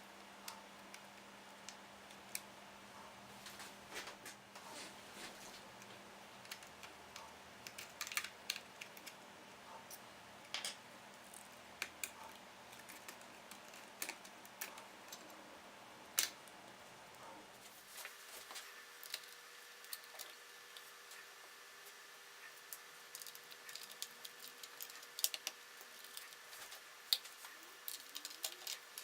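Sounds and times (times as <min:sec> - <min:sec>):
faint steady hum: 0:00.0 - 0:29.0
light clicks of small parts: 0:22.4 - 0:29.0.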